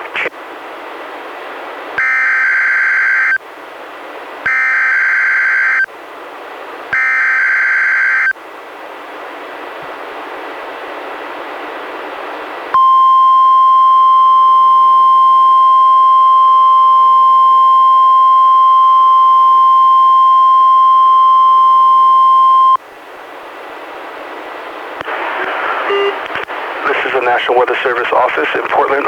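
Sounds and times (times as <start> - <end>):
radio hiss: 0.0 - 0.4, 25.0 - 29.0
steady alarm tone: 2.0 - 3.4, 4.5 - 5.9, 6.9 - 8.4.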